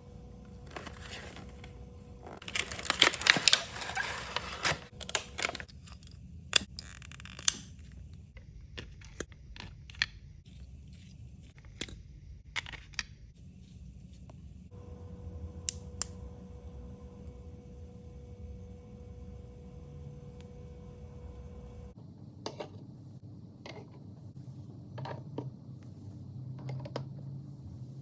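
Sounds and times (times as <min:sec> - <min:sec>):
packaging rustling and tearing: 0:00.6 - 0:06.0.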